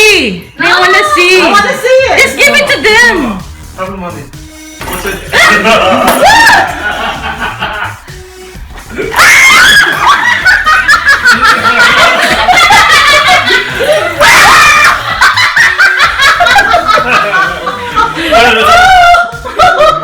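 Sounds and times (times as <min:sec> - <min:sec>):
people laughing loudly: 0:05.3 - 0:08.1, 0:08.8 - 0:20.0.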